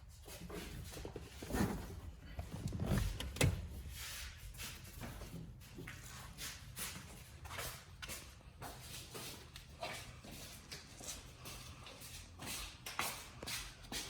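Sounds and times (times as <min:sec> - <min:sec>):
car trim knocking and scraping: 0:01.0 - 0:03.9.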